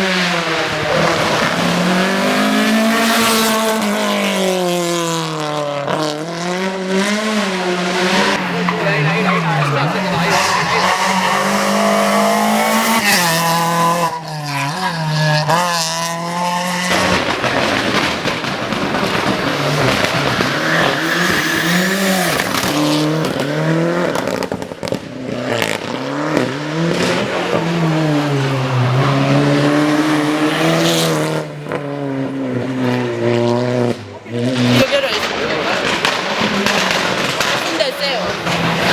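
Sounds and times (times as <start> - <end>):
rally car engines revving: 0.0 - 38.9
tyre squeal: 8.4 - 15.1.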